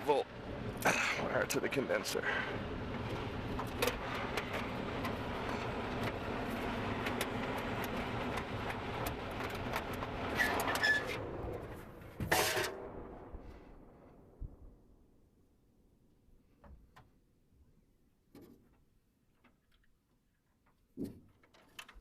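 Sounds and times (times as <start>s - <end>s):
blower rushing: 0.0s - 12.7s.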